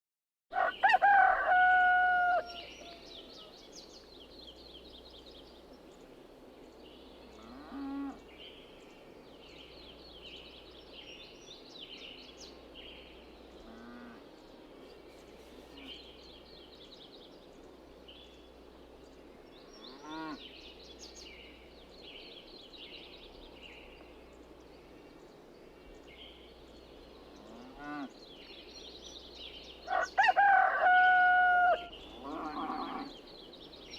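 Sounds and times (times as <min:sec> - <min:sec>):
rooster crowing: 0:00.5 - 0:03.5, 0:29.9 - 0:33.1
small birds chirping: 0:02.5 - 0:30.3, 0:31.0 - 0:33.9
distant cattle lowing: 0:31.0 - 0:33.2.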